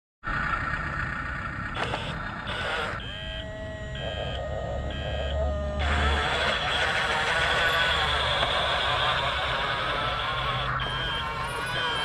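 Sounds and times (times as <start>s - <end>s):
toy bulldozer electric whine: 0.3s - 12.0s
short high beeps: 10.7s - 12.0s.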